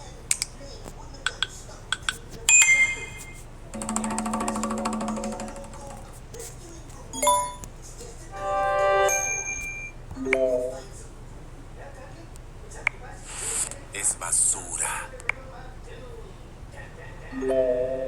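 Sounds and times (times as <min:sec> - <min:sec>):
buzzy held tone: 0:03.2 - 0:06.0, 0:08.3 - 0:10.8
bright notification chime: 0:08.4 - 0:10.8.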